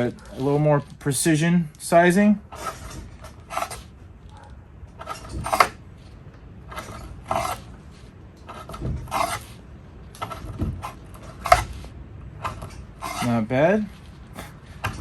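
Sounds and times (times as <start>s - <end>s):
knife slicing through cord: 10.8s - 11.9s, 12.5s - 13.5s.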